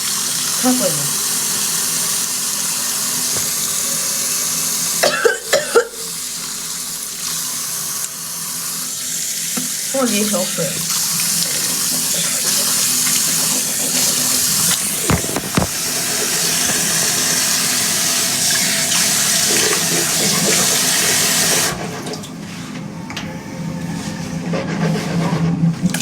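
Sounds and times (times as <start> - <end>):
water running from tap: 0.0 - 22.2
sharp knocks: 15.1 - 15.8.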